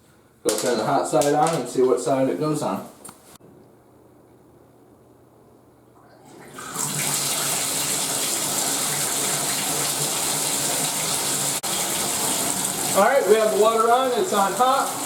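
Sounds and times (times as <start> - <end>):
water running from bathtub spout: 6.3 - 15.0.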